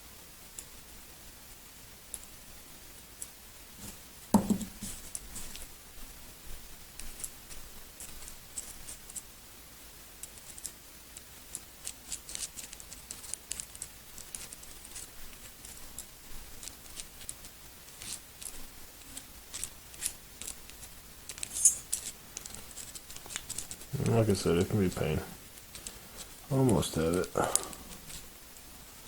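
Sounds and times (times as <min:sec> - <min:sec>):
pistol parts clicking and scraping: 0:21.3 - 0:24.6.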